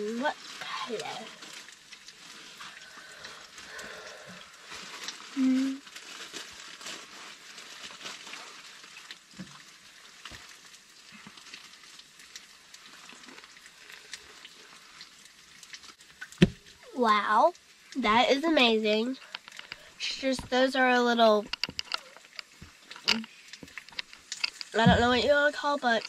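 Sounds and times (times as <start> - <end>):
person humming: 5.4 - 5.8.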